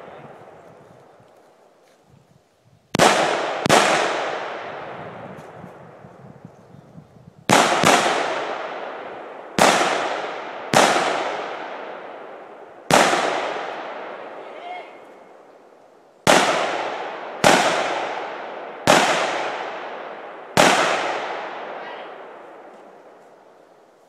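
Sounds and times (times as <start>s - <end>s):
rifle shots echoing: 3.0s - 5.2s, 7.5s - 15.4s, 16.2s - 23.0s.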